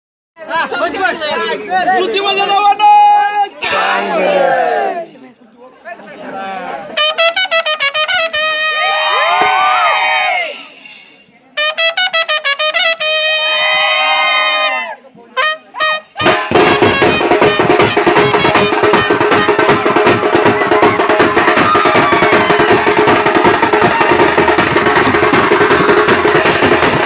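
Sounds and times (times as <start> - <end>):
brass band playing: 3.6 - 4.7, 6.9 - 9.3, 11.5 - 27.0
trumpet bending notes: 7.0 - 9.2, 11.6 - 21.7
steady drum beat: 15.9 - 27.0.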